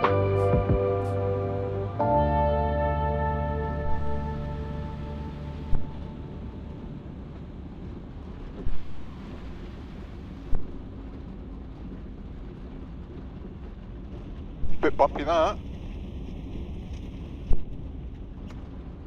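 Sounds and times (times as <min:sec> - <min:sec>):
aircraft engine rumble: 0:00.0 - 0:19.0
air noise: 0:03.6 - 0:11.2.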